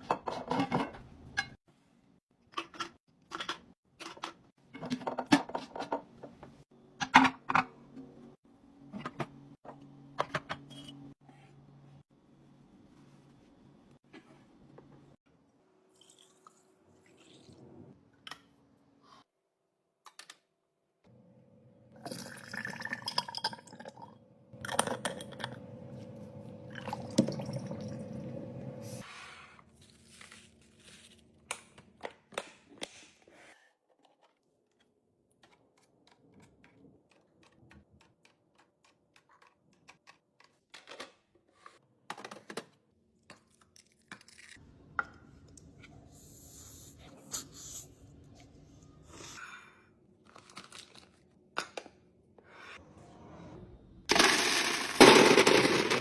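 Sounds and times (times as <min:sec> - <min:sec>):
liquid being poured: 0:22.0 - 0:28.6.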